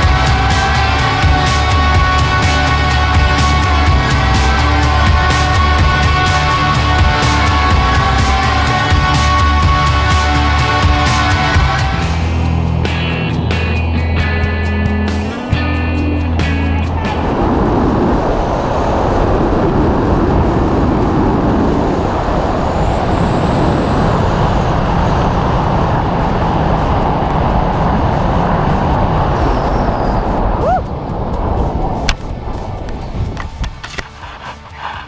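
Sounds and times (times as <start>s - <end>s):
wind buffeting microphone: 10.6s - 35.0s.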